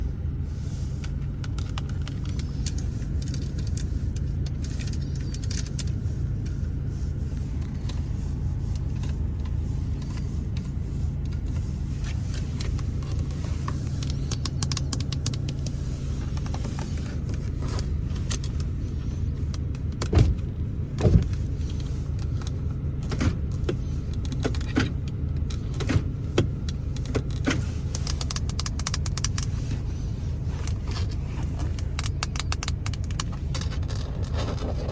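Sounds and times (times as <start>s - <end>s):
steady low rumble: 0.0s - 34.9s
fingers tapping on car interior: 7.6s - 34.1s.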